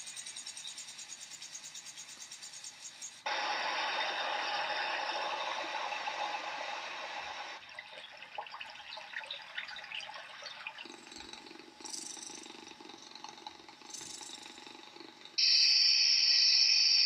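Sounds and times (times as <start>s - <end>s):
light drips and ticks: 7.6s - 15.4s.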